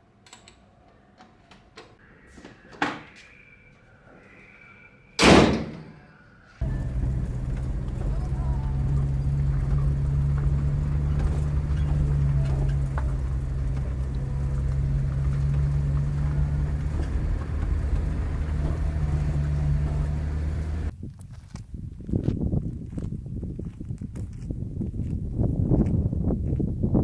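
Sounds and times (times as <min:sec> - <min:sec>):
vehicle engine droning: 0:06.6 - 0:20.9.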